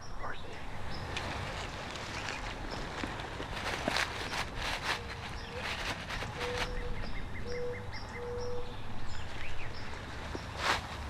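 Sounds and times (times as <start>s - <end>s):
rustling and brushing: 1.0s - 7.1s, 9.8s - 11.0s
bird cooing: 4.2s - 8.8s.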